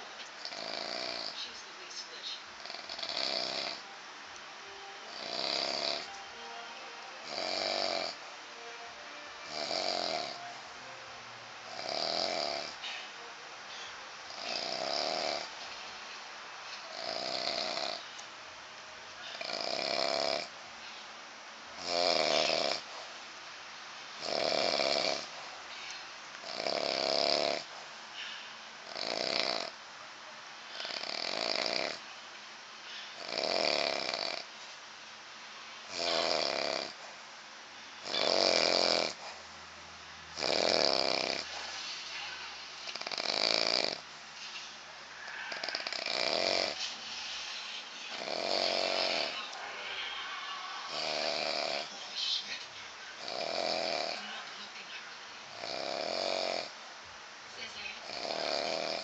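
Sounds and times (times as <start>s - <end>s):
man snoring loudly: 0.4s - 1.4s, 2.6s - 3.9s, 5.1s - 6.1s, 7.2s - 8.2s, 9.4s - 10.5s, 11.7s - 12.8s, 14.3s - 15.5s, 16.9s - 18.0s, 19.4s - 20.5s, 21.8s - 22.9s, 24.2s - 25.4s, 26.4s - 27.7s, 28.8s - 29.8s, 30.8s - 32.0s, 33.2s - 34.5s, 35.9s - 37.0s, 38.0s - 39.3s, 40.4s - 41.6s, 42.9s - 44.0s, 45.4s - 46.8s, 48.1s - 49.6s, 50.8s - 51.9s, 53.2s - 54.2s, 55.5s - 56.7s, 58.0s - 59.0s.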